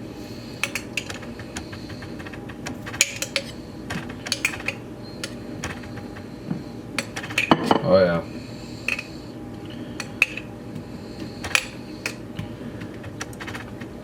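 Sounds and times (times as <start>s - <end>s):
kitchen utensils clinking: 0.6s - 1.2s, 2.7s - 5.9s, 7.0s - 7.9s, 8.8s - 9.2s, 10.0s - 10.5s.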